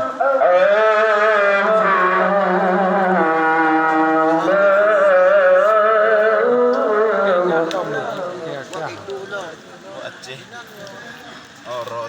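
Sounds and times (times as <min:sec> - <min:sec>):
man reciting melodically: 0:00.0 - 0:09.6.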